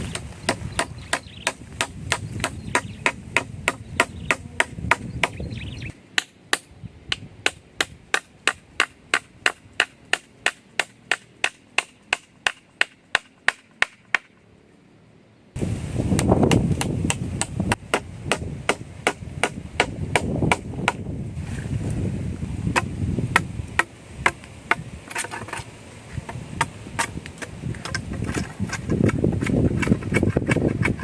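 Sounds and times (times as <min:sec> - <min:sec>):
chopping strikes on wood: 0:00.1 - 0:05.4, 0:06.2 - 0:14.3, 0:16.2 - 0:21.1, 0:22.7 - 0:25.3.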